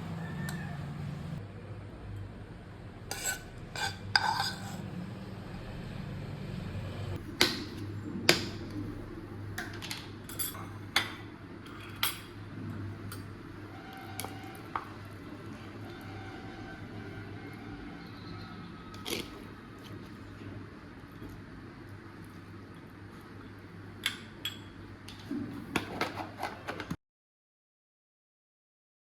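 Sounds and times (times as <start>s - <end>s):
low steady hum: 0.0s - 25.9s
cookware and cutlery clinking: 3.1s - 4.9s, 9.6s - 12.4s, 24.0s - 24.9s.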